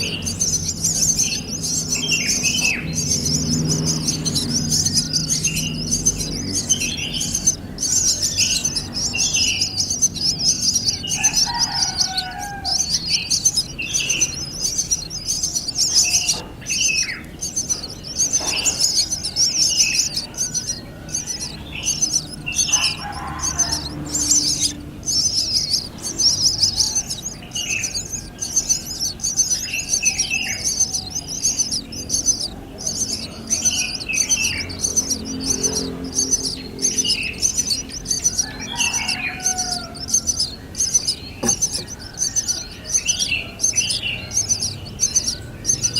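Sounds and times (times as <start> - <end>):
birds chattering: 0.0 - 45.9.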